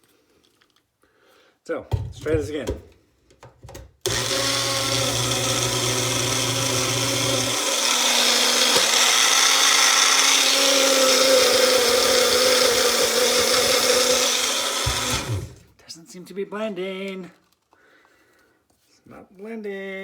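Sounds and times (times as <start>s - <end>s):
blender motor whirring: 4.0s - 15.7s.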